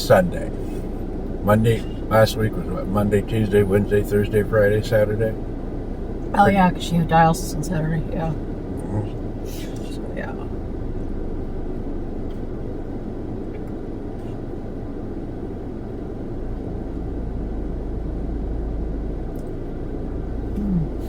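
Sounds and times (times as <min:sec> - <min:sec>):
car interior rumble: 0:00.0 - 0:21.0.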